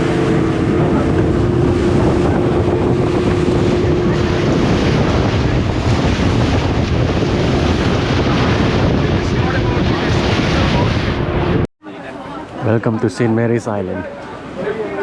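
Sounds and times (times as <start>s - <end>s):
engine hum: 0.0s - 10.6s
wind buffeting microphone: 0.0s - 11.7s.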